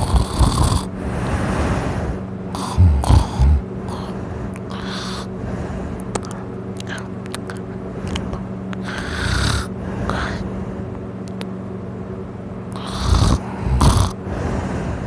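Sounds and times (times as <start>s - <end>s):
man snoring loudly: 0.0s - 5.3s, 8.8s - 10.4s, 12.8s - 14.6s.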